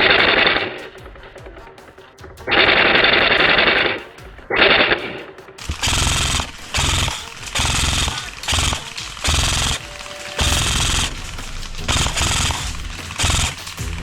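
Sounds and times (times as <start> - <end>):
airsoft gun bursts: 5.6 - 14.0.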